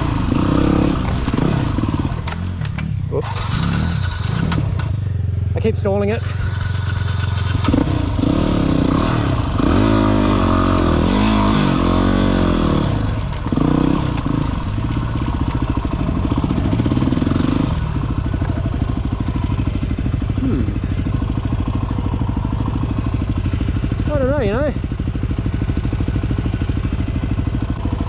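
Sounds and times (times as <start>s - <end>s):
dirt bike engine revving: 0.0s - 28.0s.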